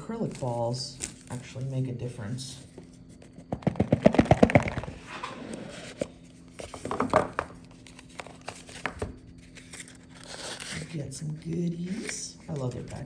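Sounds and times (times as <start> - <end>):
packaging rustle: 6.6 - 11.0.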